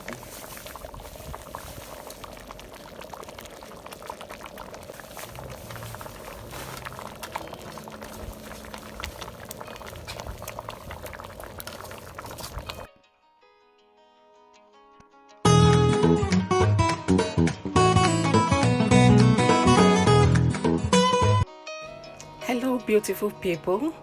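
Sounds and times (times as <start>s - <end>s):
soup boiling and bubbling: 0.0s - 12.9s.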